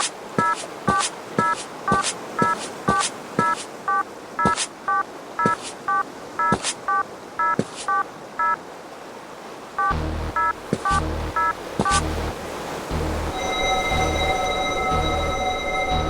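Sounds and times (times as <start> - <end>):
railroad crossing bell ringing: 13.3 - 16.0.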